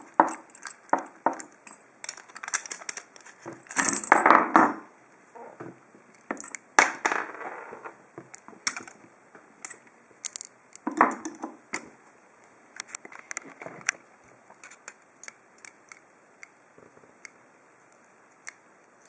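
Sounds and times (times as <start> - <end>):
lock pick clicks and scrapes: 9.6 - 10.5.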